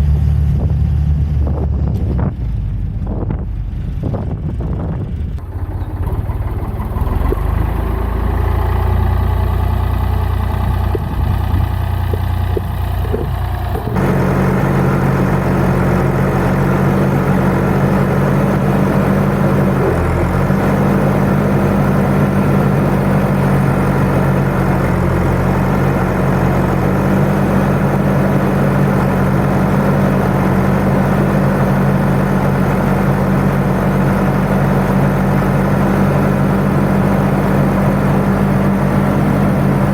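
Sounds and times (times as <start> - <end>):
tractor engine running: 0.0 - 39.9
wind noise: 0.4 - 7.7, 10.6 - 14.0.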